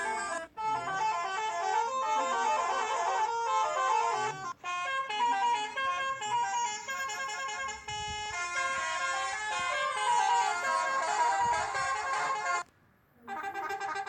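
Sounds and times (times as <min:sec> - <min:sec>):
bus multi-tone horn melody: 0:00.0 - 0:14.0.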